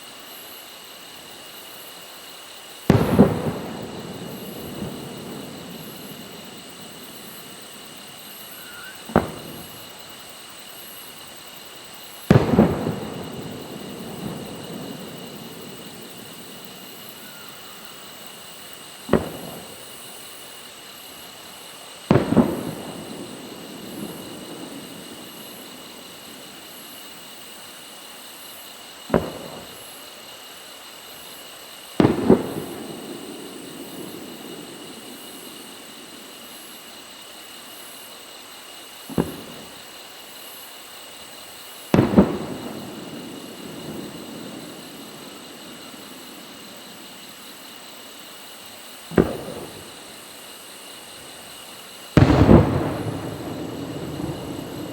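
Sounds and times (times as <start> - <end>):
fireworks booming with echo: 0.3 - 54.9.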